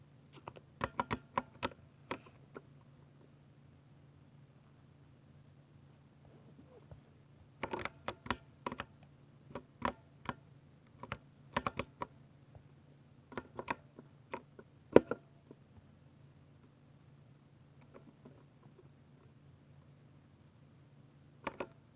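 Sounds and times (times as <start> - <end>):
mechanical keyboard keystrokes: 0.4 - 2.2, 7.6 - 8.9, 11.0 - 12.1, 21.4 - 21.8.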